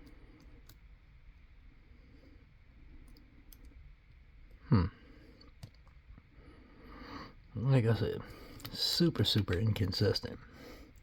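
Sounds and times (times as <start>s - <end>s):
short falling vocal sound: 4.7s - 5.0s.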